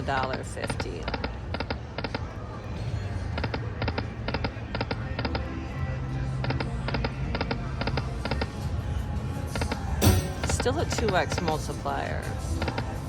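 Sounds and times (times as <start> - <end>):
electronic game music: 10.0 - 10.9
slot machine reel clicks: 10.0 - 11.6.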